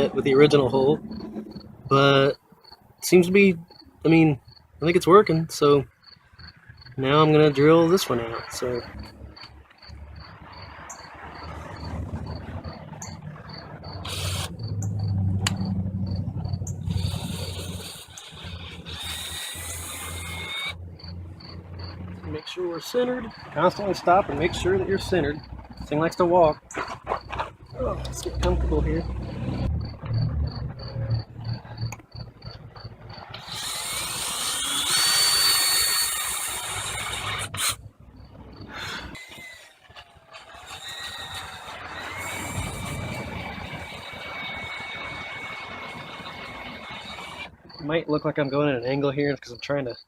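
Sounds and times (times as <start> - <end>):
crickets chirping: 0.0 - 39.2, 40.8 - 50.0
electric drill motor hum: 14.0 - 14.5, 16.9 - 20.8, 33.4 - 37.8, 40.6 - 47.5.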